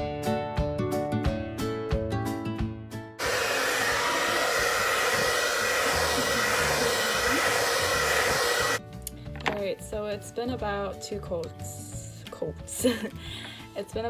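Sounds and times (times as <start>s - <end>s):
hair dryer whining: 3.2s - 8.8s.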